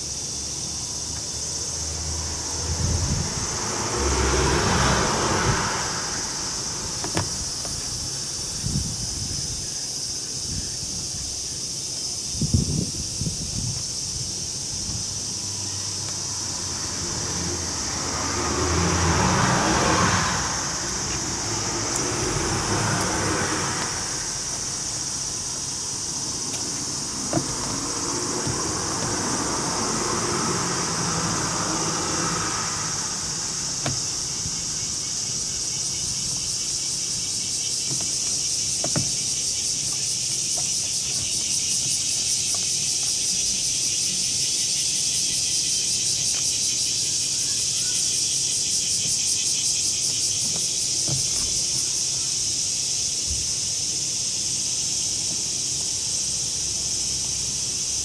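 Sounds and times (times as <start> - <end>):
insects shrilling: 0.0 - 58.0.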